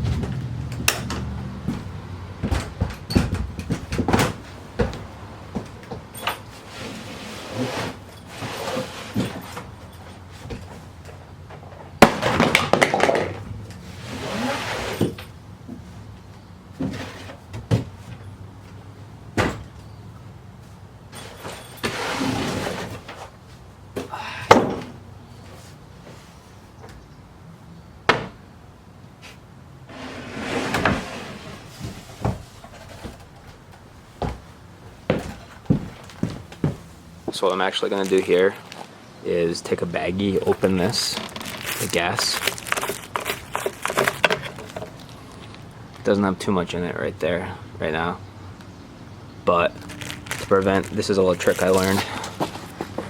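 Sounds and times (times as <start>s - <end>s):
sharp knocks and clunks: 0.0s - 6.1s, 28.1s - 28.4s
rustling and scraping: 0.0s - 16.1s, 16.8s - 18.8s, 20.6s - 23.7s, 29.2s - 39.0s, 39.6s - 46.3s, 49.6s - 53.0s.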